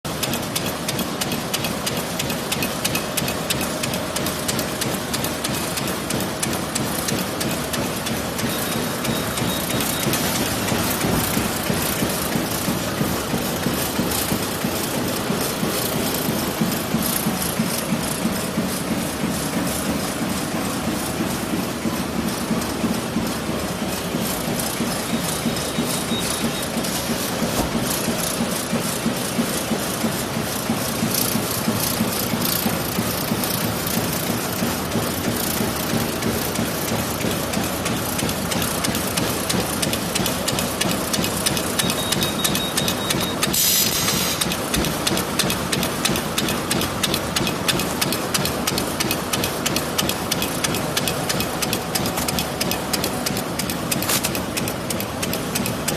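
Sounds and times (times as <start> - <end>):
machine humming and clattering: 0.1 - 55.9
short hiss: 43.6 - 44.4.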